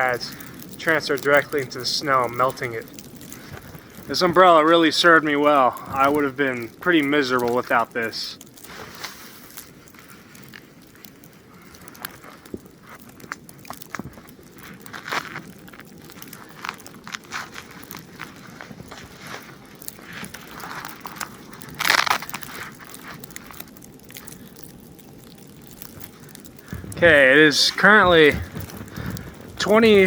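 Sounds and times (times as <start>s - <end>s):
camping gear crinkling and rustling: 0.0s - 30.0s
footsteps in snow: 16.1s - 22.6s, 26.6s - 30.0s.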